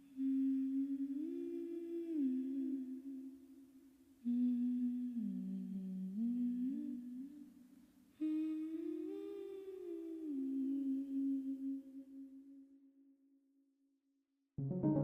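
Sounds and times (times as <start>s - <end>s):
person humming a melody: 0.0s - 3.4s, 4.2s - 7.4s, 8.2s - 12.4s.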